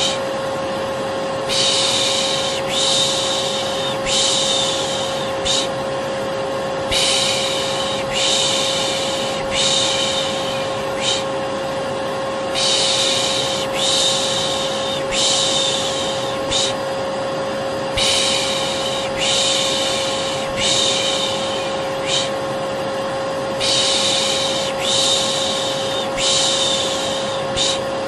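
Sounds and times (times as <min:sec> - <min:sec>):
vacuum cleaner motor humming: 0:00.0 - 0:28.0
person shushing: 0:01.5 - 0:05.8, 0:06.9 - 0:11.4, 0:12.6 - 0:16.8, 0:18.0 - 0:22.4, 0:23.6 - 0:27.9.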